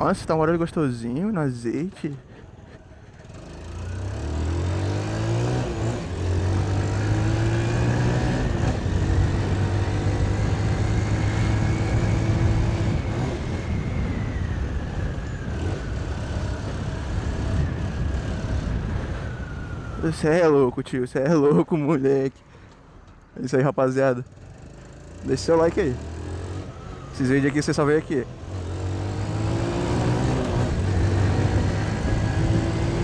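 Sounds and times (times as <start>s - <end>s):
motorcycle engine revving: 3.1s - 19.6s, 24.3s - 33.0s.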